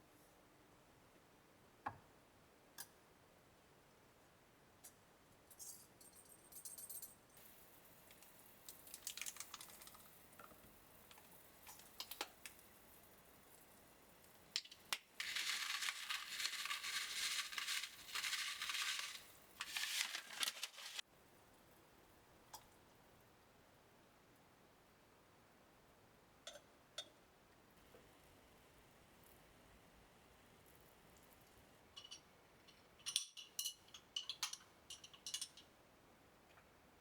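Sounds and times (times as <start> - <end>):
clicks and handling noises: 14.6 - 21.0.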